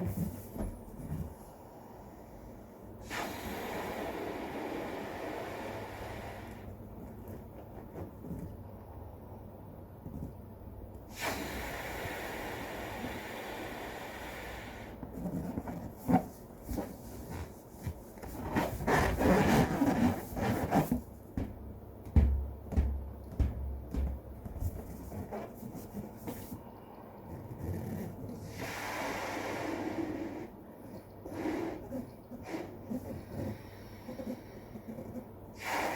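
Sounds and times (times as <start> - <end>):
breaths blowing up balloon: 3.0 - 6.8, 11.1 - 17.5, 27.3 - 30.6, 31.3 - 35.9
balloon rubber rubbing on hands: 15.0 - 21.5, 22.7 - 26.6, 27.3 - 28.7, 31.3 - 35.8.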